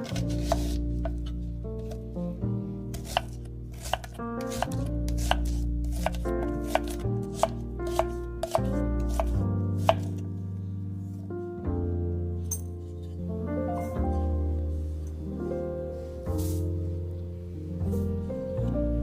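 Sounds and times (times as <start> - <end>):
knife chopping on cutting board: 0.0 - 1.2, 2.9 - 10.2
background music: 0.0 - 19.0.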